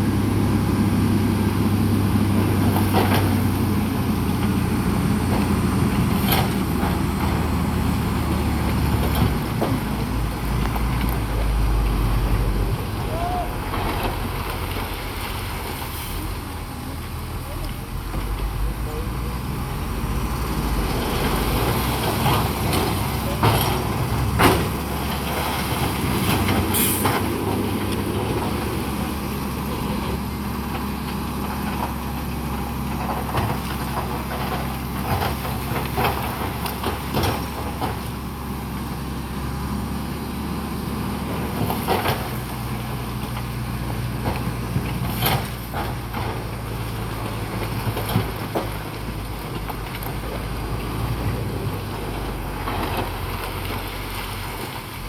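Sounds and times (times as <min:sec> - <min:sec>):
heavy diesel machinery running: 0:00.0 - 0:55.0.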